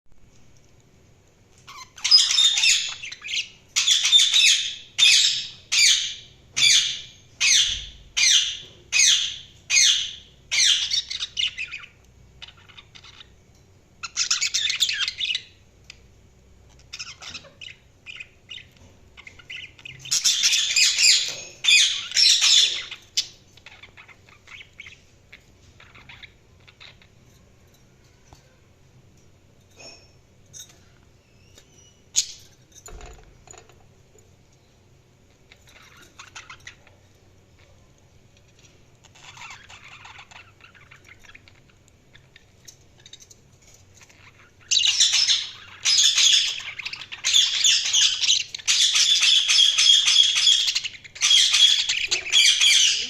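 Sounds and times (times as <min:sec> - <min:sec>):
budgerigars chirping: 0:01.7 - 0:13.3, 0:14.0 - 0:16.0, 0:16.8 - 0:27.1, 0:39.0 - 0:42.6, 0:44.0 - 0:53.0.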